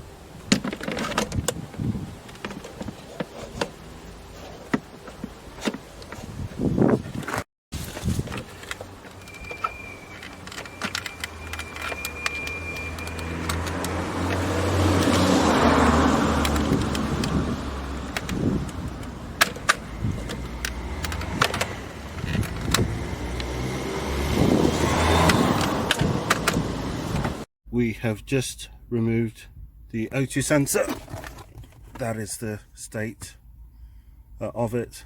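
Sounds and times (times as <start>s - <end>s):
sharp clicks and knocks: 8.2s - 23.6s, 25.2s - 27.4s
car passing by: 12.9s - 18.0s, 23.0s - 27.4s.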